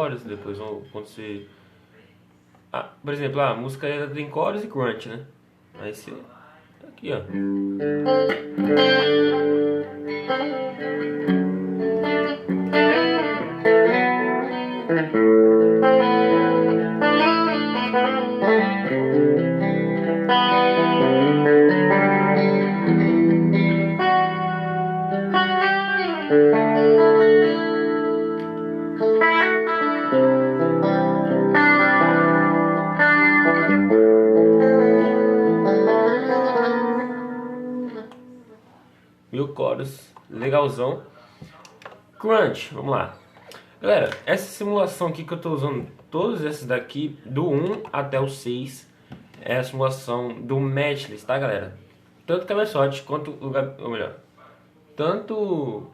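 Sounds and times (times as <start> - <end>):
electric guitar with chorus effect: 7.2 - 39.0.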